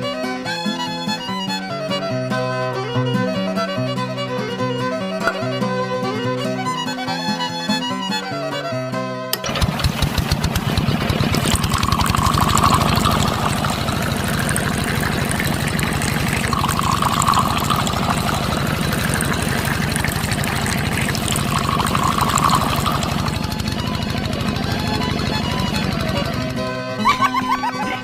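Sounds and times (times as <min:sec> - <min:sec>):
small motor rattling: 0:09.4 - 0:28.0.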